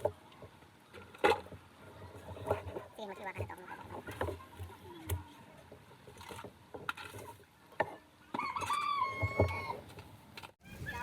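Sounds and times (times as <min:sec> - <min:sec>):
rooster crowing: 0:08.4 - 0:09.8.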